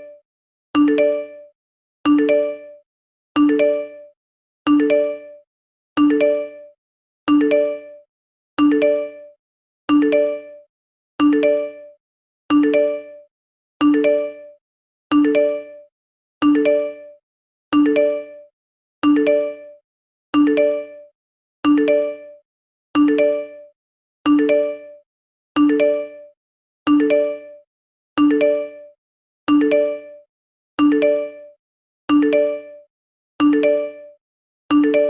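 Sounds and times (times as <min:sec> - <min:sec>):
text message alert chime: 0:34.7 - 0:35.0.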